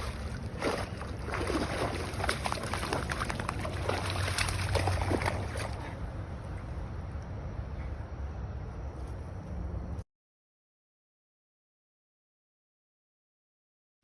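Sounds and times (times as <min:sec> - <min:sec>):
dog splashing in water: 0:00.0 - 0:06.1
steady low rumble: 0:00.0 - 0:10.0.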